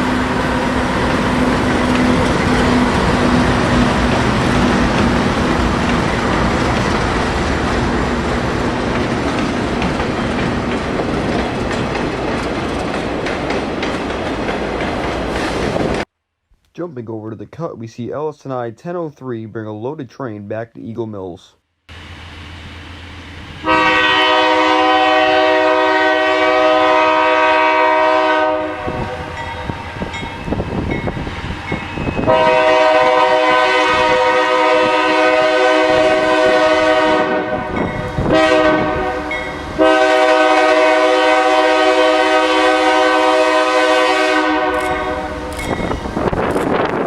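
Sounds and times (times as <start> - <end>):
freight train rumbling by: 0.0 - 16.1, 21.9 - 47.0
locomotive air horn chord: 23.6 - 29.7, 32.2 - 45.6.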